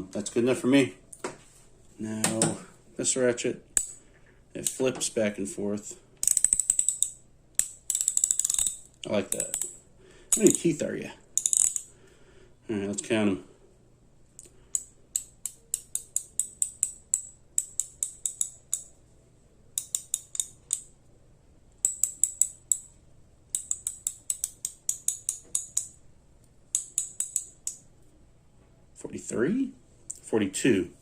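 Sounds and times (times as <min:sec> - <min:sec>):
socket ratchet clicking: 0:06.2 - 0:10.7, 0:11.4 - 0:11.9, 0:14.7 - 0:19.0, 0:19.8 - 0:21.0, 0:21.7 - 0:26.0, 0:26.7 - 0:27.9.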